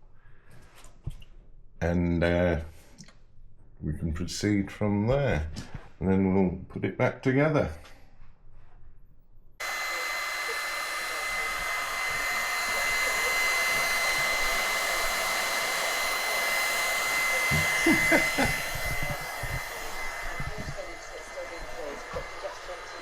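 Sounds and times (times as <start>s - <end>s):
small blower whirring: 9.6s - 23.0s.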